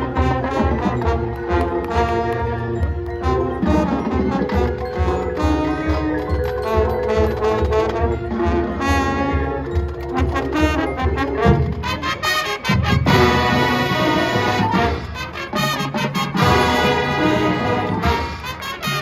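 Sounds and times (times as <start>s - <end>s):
marching band playing: 0.0s - 19.0s.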